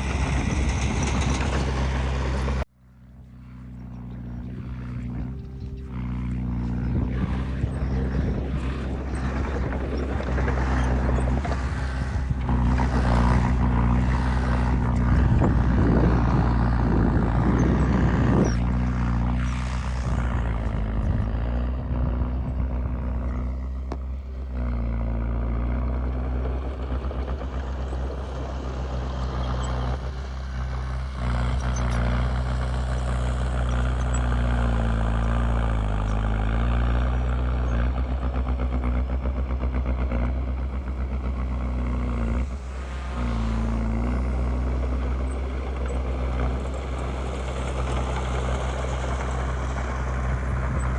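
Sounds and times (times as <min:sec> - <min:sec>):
knocks and rattles: 0:00.0 - 0:02.6, 0:07.2 - 0:21.6
heavy diesel engine droning: 0:00.0 - 0:50.9.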